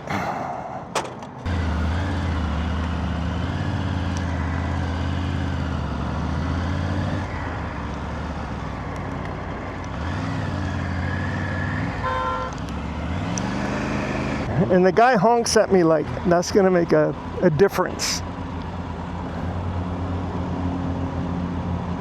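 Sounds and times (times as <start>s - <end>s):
motorcycle engine running: 1.4s - 13.1s
car horn honk: 12.0s - 12.6s.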